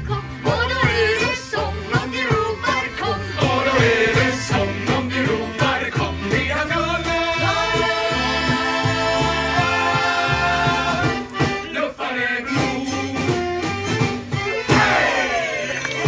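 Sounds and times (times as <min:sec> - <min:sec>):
steady bass line: 0:00.0 - 0:11.6
live band with singers: 0:00.0 - 0:16.0.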